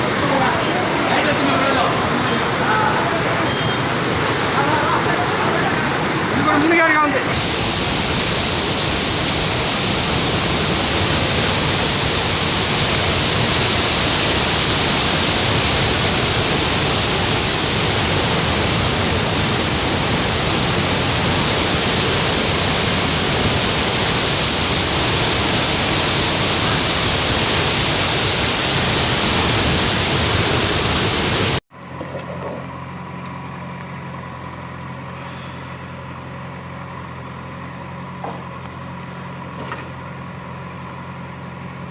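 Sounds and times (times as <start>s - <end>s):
low hum: 7.4s - 31.6s.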